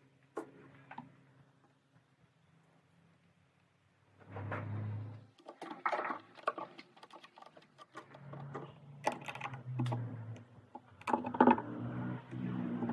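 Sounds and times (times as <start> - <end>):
clicks and knocks: 5.4 - 12.9.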